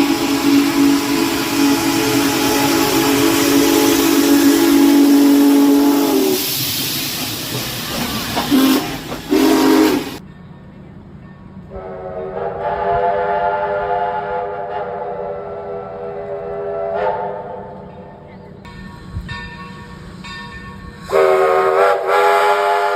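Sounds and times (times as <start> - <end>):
locomotive air horn: 0.0 - 6.4, 8.5 - 10.2, 11.7 - 17.7, 21.1 - 22.9
passing train: 0.0 - 22.9.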